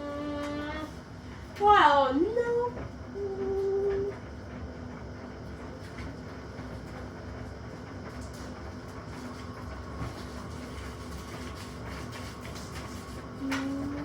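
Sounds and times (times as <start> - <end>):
faint hum: 0.0 - 4.6
washing machine rumbling: 0.0 - 14.0.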